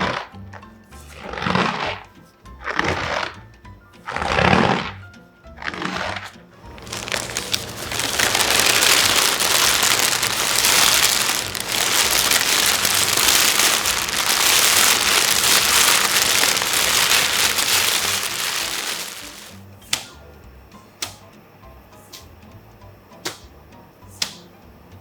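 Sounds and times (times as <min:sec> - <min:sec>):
dense crackling patter: 0:06.6 - 0:19.6.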